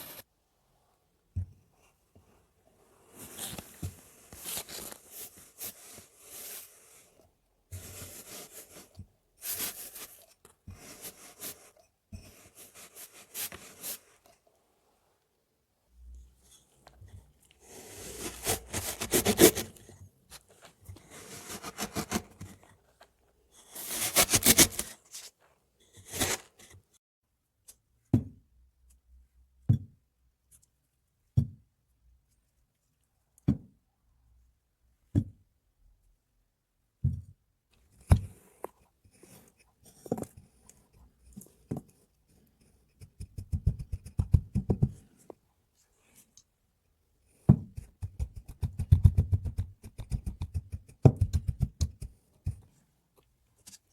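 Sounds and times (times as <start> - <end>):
sand being cut and squished: 17.7 - 19.7, 23.8 - 25.0, 26.1 - 26.5.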